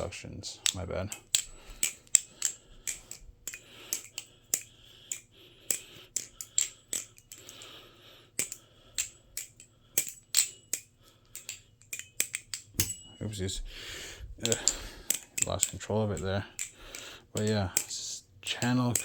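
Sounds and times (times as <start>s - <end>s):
metal handles clacking: 8.4s - 13.7s, 14.4s - 19.0s.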